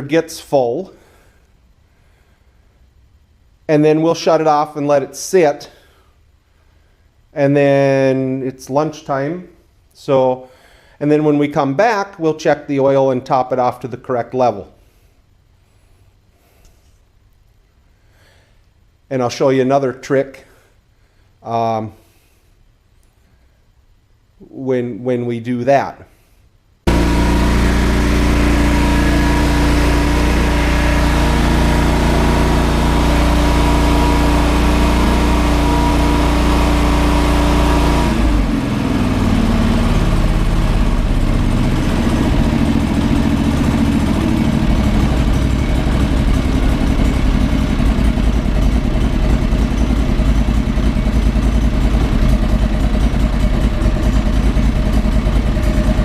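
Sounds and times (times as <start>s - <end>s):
lawn tractor engine running: 26.9s - 56.0s.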